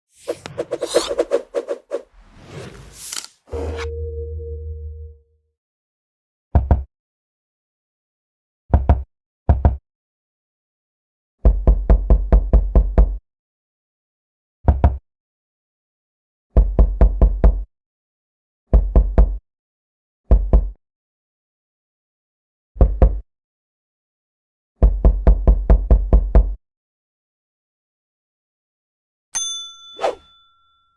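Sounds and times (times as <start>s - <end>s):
knocking on a door: 8.7s - 9.8s, 11.4s - 13.2s, 24.8s - 26.6s.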